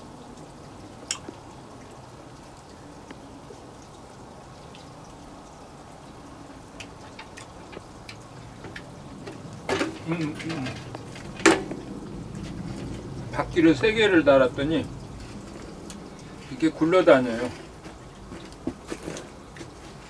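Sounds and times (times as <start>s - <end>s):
light rain pattering: 0.0s - 20.0s.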